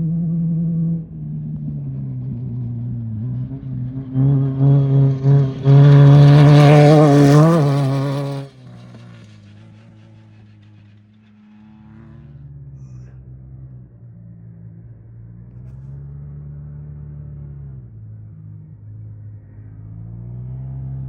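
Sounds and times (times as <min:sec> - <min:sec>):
race vehicle engine passing by: 0:00.0 - 0:21.0.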